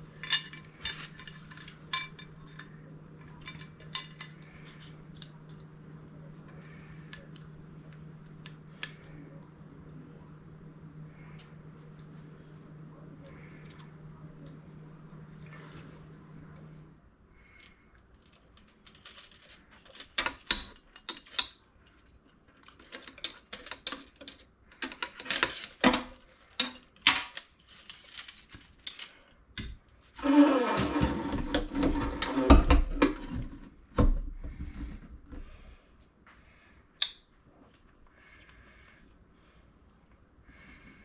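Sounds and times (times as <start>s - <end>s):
faucet parts clattering: 0.2s - 2.7s, 3.3s - 4.9s.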